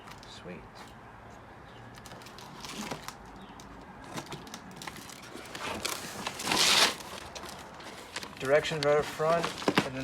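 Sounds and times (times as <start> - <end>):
cardboard packaging rustling: 2.0 - 10.0
cardboard scraping: 4.0 - 10.0.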